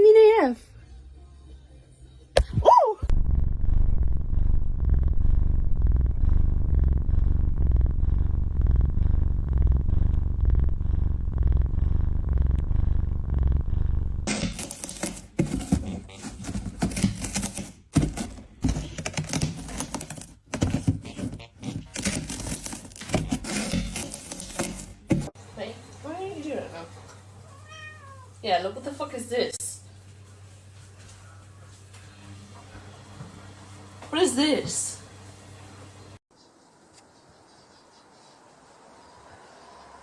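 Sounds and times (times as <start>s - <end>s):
cat purring: 3.7s - 14.3s.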